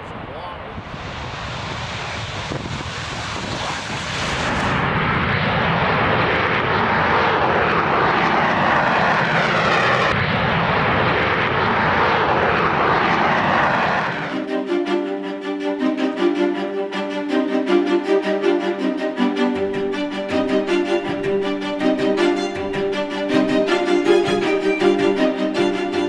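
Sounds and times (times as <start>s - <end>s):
aircraft engines roaring: 18.8s - 26.0s.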